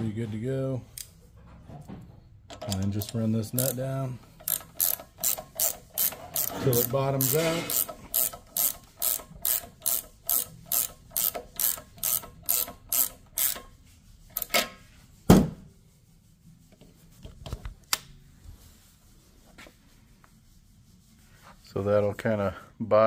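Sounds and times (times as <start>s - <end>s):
ratchet wrench clicking: 2.6s - 3.8s, 4.4s - 13.7s, 14.3s - 14.6s.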